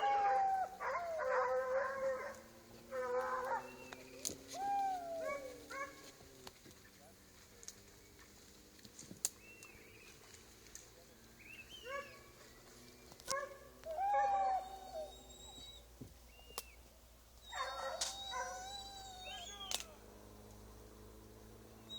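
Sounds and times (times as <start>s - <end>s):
dogs whining and yelping: 0.0s - 6.1s, 13.3s - 15.9s, 17.4s - 19.8s
sharp clicks: 19.6s - 19.9s.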